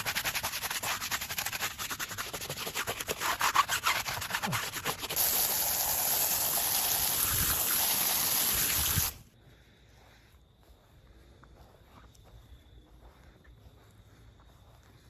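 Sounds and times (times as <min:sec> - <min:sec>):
brush scrubbing: 0:00.0 - 0:09.2
water spray hissing: 0:00.0 - 0:09.2.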